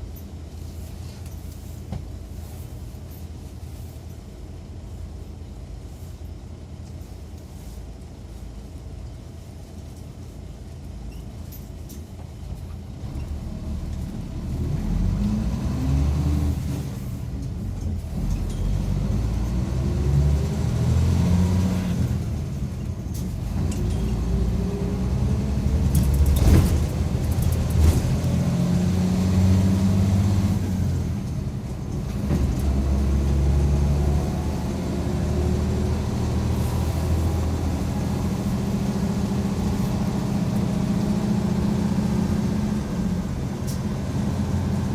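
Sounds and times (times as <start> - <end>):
bus engine accelerating: 11.8 - 44.9.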